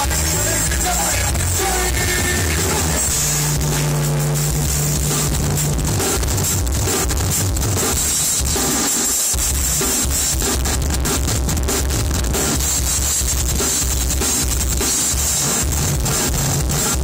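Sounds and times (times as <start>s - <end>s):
low bass notes: 0.0s - 8.0s, 10.6s - 12.9s
drums: 0.0s - 17.0s
live band playing: 0.0s - 17.0s.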